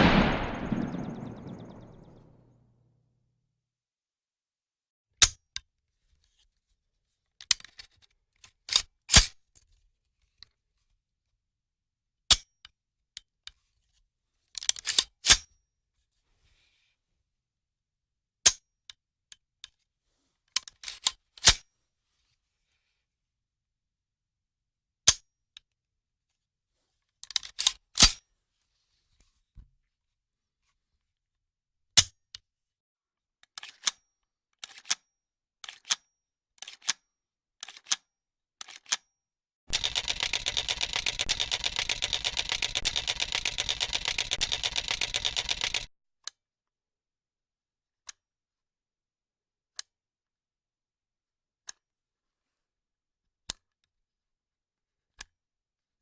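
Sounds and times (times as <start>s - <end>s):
rifle cocking clicks: 0.0s - 2.0s, 39.7s - 45.9s.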